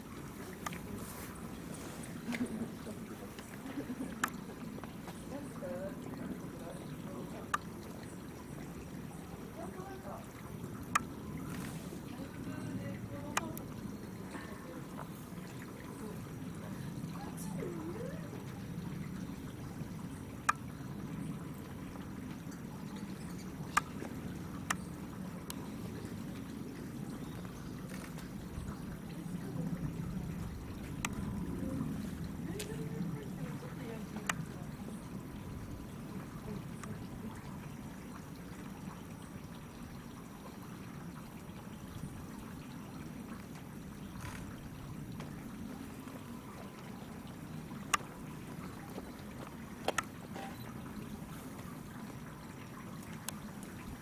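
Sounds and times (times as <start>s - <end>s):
flowing water: 0.0s - 54.0s
faint clicks: 3.4s - 5.0s.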